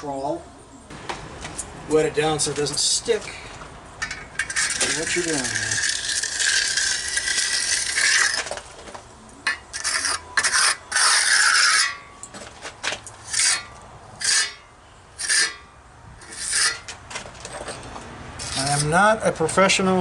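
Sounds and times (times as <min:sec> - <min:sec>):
trowel scraping wet cement: 0:04.4 - 0:08.7, 0:09.5 - 0:12.1, 0:13.3 - 0:14.6, 0:15.2 - 0:15.6, 0:16.2 - 0:17.0, 0:18.4 - 0:19.2.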